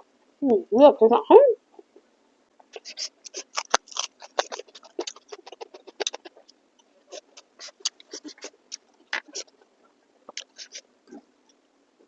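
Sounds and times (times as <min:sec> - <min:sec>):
wet chewing and lip-smacking: 0:02.6 - 0:11.6.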